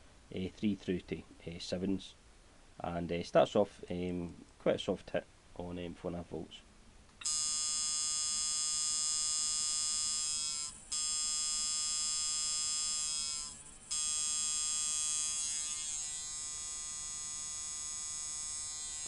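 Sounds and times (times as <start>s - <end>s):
tattoo machine buzzing: 7.2s - 19.0s.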